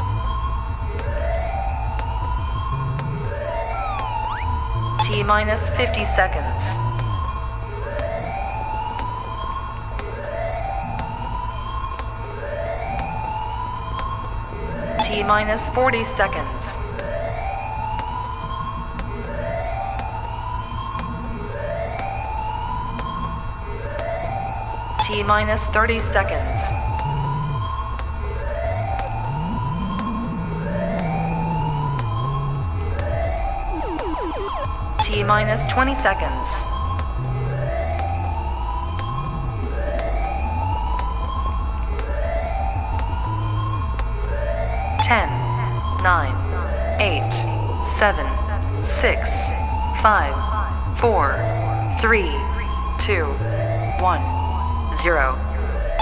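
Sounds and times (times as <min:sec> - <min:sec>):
rising siren-like whoop: 0:00.0 - 0:14.0, 0:21.5 - 0:56.0
sharp ticks: 0:00.0 - 0:56.0
low rumble: 0:25.4 - 0:56.0.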